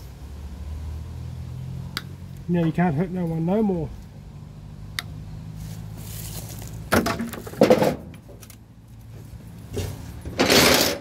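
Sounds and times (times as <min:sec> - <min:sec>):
metallic clattering of tools: 0:10.2 - 0:11.0.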